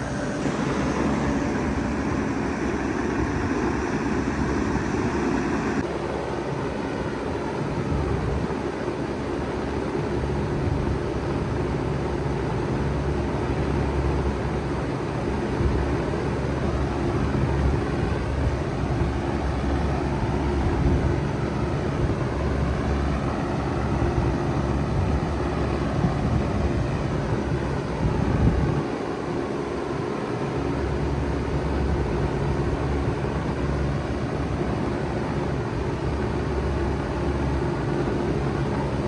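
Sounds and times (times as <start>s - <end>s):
compressor low hum: 0.0s - 5.9s
fan air rushing: 0.0s - 5.9s.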